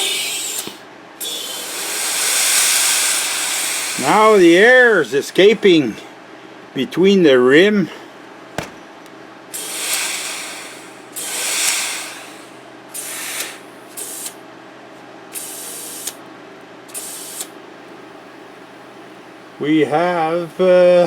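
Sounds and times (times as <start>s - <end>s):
compressed air hissing: 0.0s - 4.6s, 9.5s - 14.4s, 15.3s - 16.2s, 16.9s - 17.6s.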